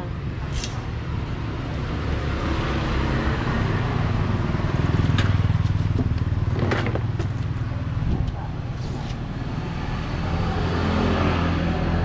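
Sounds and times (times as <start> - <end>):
vehicle engine passing by: 7.8 - 12.0.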